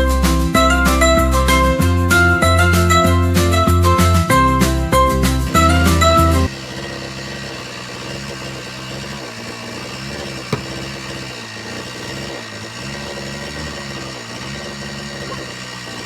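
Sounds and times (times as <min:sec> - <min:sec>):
chainsaw engine running: 0:00.0 - 0:16.0.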